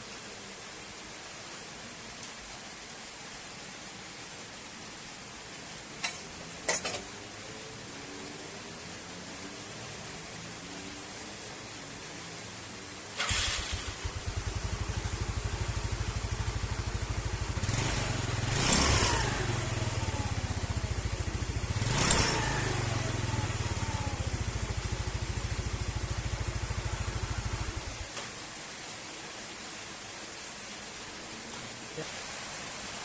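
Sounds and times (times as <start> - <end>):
scooter engine idling and revving: 13.2 - 28.1.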